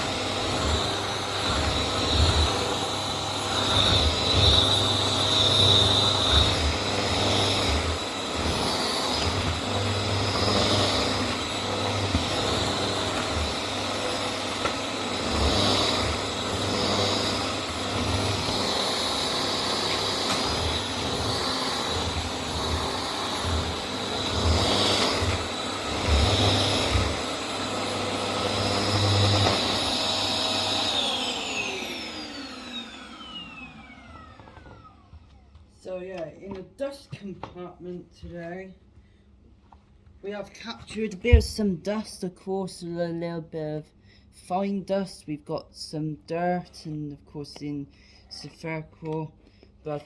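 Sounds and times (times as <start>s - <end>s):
vacuum cleaner motor whine: 0.0s - 36.0s.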